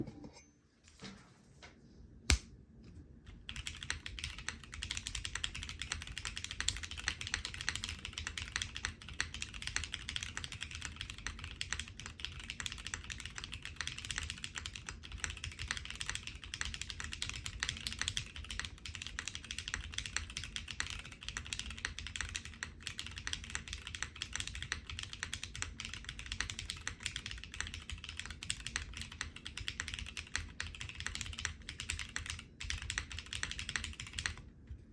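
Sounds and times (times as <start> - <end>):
sharp click: 2.3 - 2.5
fast mechanical keyboard typing: 3.4 - 34.5.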